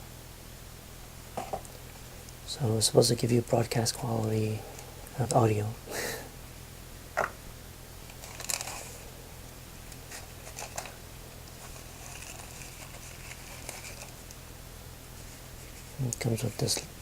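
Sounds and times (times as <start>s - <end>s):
steady low hum: 0.0s - 17.0s
packaging crinkling and rustling: 8.0s - 9.0s, 9.9s - 14.4s.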